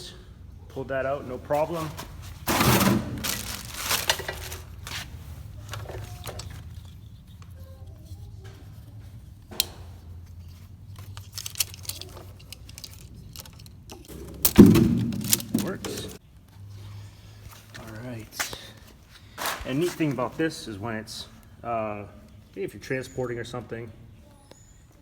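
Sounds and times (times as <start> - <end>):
packaging rustling: 1.5 - 8.3, 10.2 - 16.2
clicks and knocks: 11.0 - 16.2.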